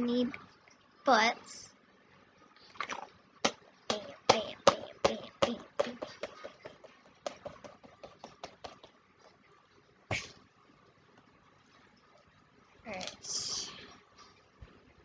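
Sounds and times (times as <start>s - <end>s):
squishy balls slapping hard surface: 2.8s - 9.0s.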